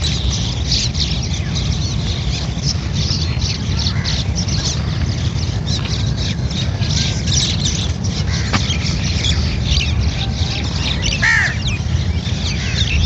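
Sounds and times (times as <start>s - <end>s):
small birds chirping: 0.0s - 13.0s
steady low rumble: 0.0s - 13.0s
low bird squawk: 2.7s - 13.0s.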